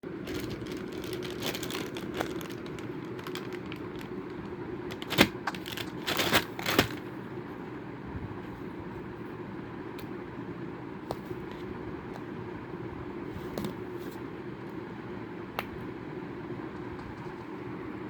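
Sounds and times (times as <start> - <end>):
steady low hum: 0.0 - 18.0
packaging clicks and crinkles: 0.2 - 7.0
packaging rustling: 0.2 - 7.0
packaging snapping: 0.2 - 7.0.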